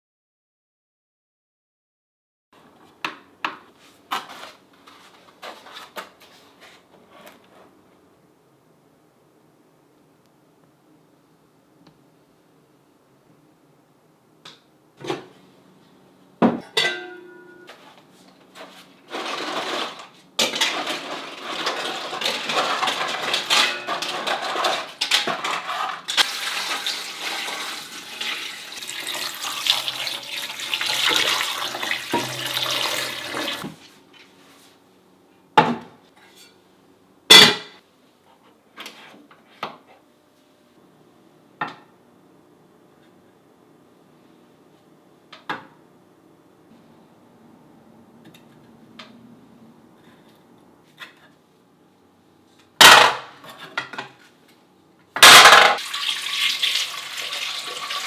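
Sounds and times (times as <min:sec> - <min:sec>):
pots and utensils clinking: 0:16.6 - 0:17.8, 0:18.7 - 0:33.7, 0:55.2 - 0:58.0
water running: 0:26.2 - 0:33.8, 0:55.8 - 0:58.0.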